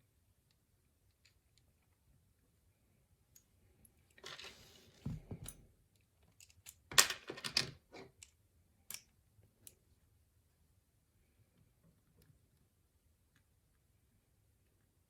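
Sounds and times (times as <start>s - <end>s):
metal lock parts clicking and rattling: 6.3s - 9.1s.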